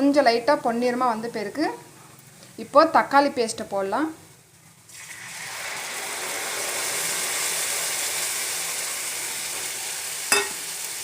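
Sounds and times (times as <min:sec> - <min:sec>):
paste sizzling in hot oil: 0:04.8 - 0:11.0.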